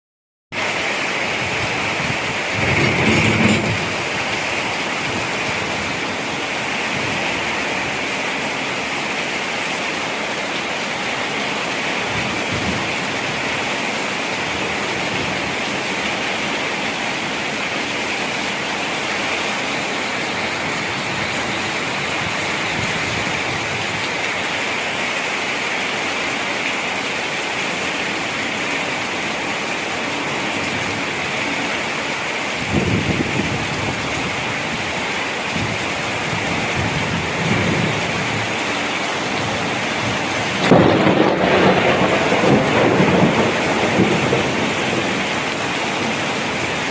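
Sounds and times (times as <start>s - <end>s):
heavy rain: 0.5s - 46.9s.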